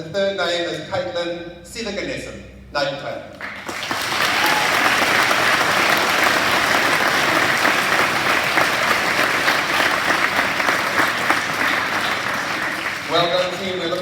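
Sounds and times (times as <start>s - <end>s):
children clapping: 3.4s - 14.0s.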